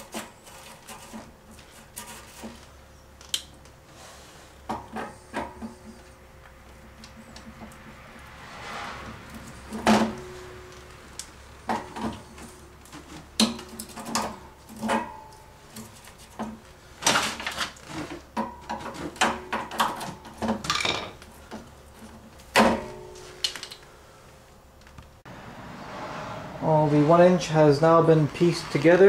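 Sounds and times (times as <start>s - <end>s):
plumbing pipes and tools knocking: 18.2s - 23.2s.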